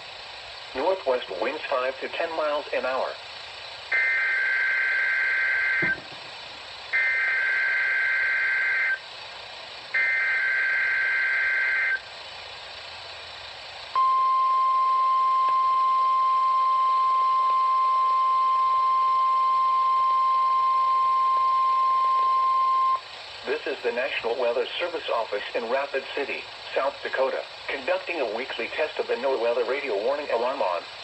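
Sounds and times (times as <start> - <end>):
radio hiss: 0.0 - 6.2, 23.0 - 31.0
steady warning alarm tone: 3.9 - 6.0, 6.9 - 9.0, 9.9 - 12.0, 14.0 - 23.0.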